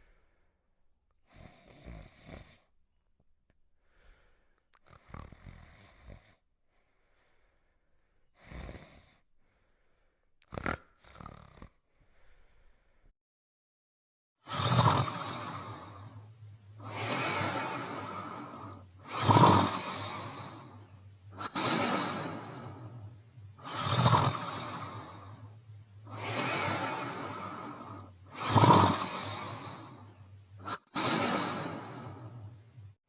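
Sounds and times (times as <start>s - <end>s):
cartoon dog snoring: 1.2s - 2.7s, 4.7s - 6.4s, 8.3s - 9.2s, 10.4s - 12.8s, 14.4s - 33.0s.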